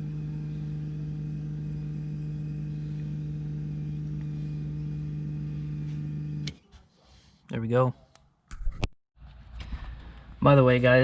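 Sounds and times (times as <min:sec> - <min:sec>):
electric fuel pump humming: 0:00.0 - 0:06.6.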